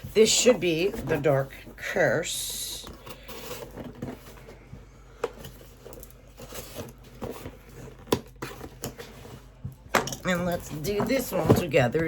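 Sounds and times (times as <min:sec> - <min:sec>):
packaging rustling: 0:02.8 - 0:12.0.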